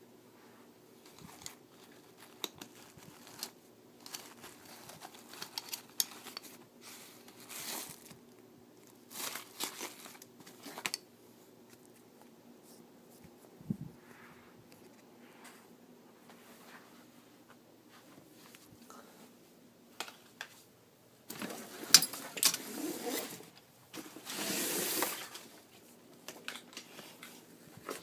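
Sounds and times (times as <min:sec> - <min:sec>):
rustling scrapes: 0:00.4 - 0:08.2, 0:12.6 - 0:18.7, 0:21.4 - 0:25.9.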